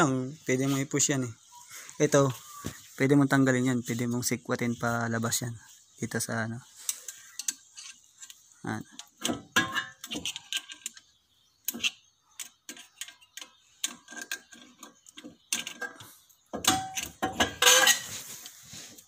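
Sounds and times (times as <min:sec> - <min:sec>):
hand tools scraping on metal: 0:13.8 - 0:18.9.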